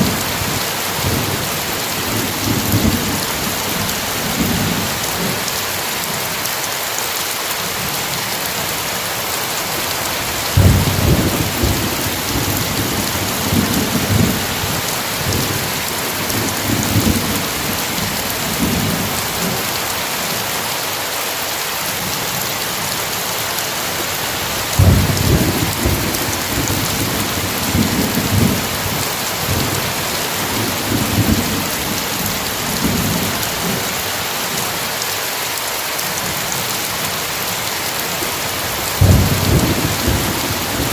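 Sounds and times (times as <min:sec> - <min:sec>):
heavy rain: 0:00.0 - 0:40.9
thunder rumbling: 0:10.5 - 0:19.6, 0:24.6 - 0:33.8, 0:39.0 - 0:40.9.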